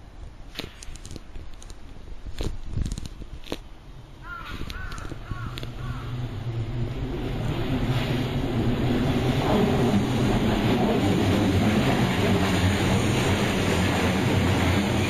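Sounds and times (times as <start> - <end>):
electric train rumble: 3.9 - 15.0
crow cawing: 4.2 - 6.2.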